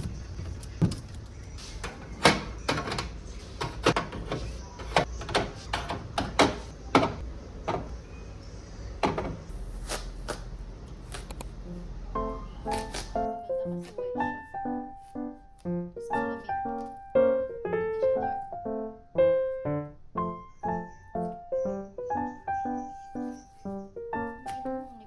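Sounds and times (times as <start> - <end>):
knocks and clicks of objects: 1.9 - 8.0, 9.0 - 9.5.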